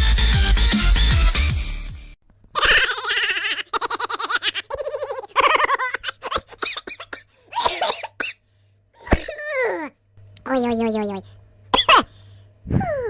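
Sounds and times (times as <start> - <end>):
cartoon high-pitched giggles: 2.6 - 7.1.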